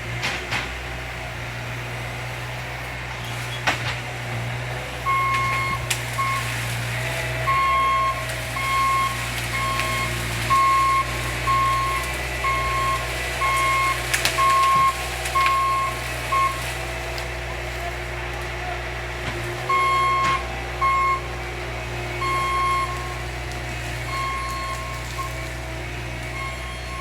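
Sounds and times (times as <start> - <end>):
engine running: 0.0 - 27.0
reversing alarm beeping: 5.0 - 6.6, 7.4 - 16.8, 19.6 - 21.4, 22.1 - 23.3, 24.0 - 27.0.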